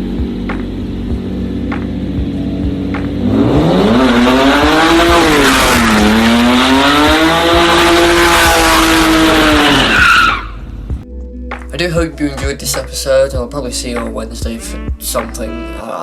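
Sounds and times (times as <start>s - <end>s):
car engine revving: 0.0s - 11.0s
tyres squealing: 7.5s - 10.6s.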